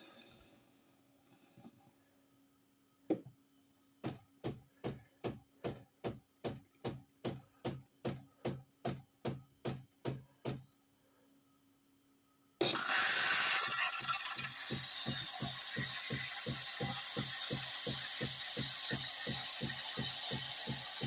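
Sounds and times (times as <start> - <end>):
coffee bean grinder: 12.6 - 21.0
coffee machine pulsing knocks: 12.6 - 21.0.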